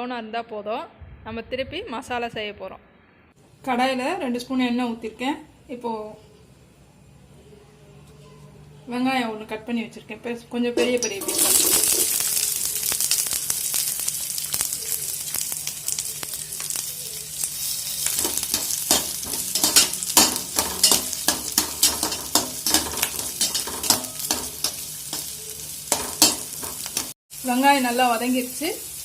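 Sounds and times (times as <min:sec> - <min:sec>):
spoon scraping a pan: 0:10.8 - 0:12.4, 0:16.7 - 0:27.1
onion sizzling in hot oil: 0:10.8 - 0:29.0.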